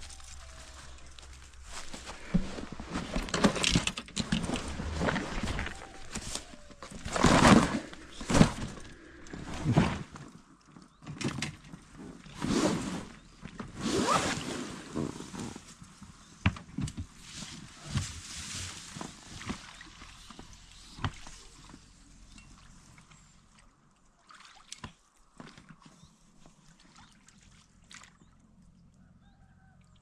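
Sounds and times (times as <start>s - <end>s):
oars knocking: 0.0s - 10.2s
oars splashing through water: 0.0s - 10.4s, 17.1s - 28.4s.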